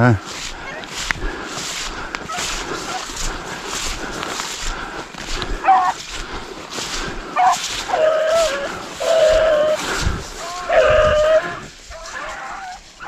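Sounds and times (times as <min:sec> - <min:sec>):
dogs yelping and baying: 0:05.6 - 0:06.0, 0:07.3 - 0:13.0.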